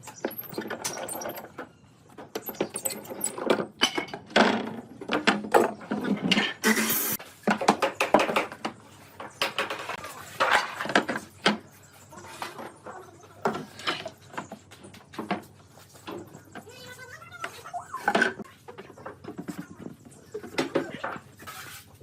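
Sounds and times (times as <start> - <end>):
wood and tools knocking: 7.4 - 11.7.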